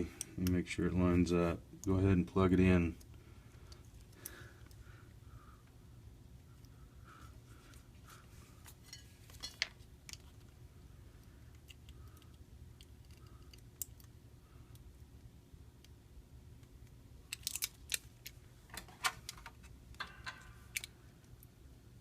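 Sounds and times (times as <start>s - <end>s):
low steady hum: 0.0s - 22.0s
clicks of tiny parts and tools: 17.3s - 20.9s.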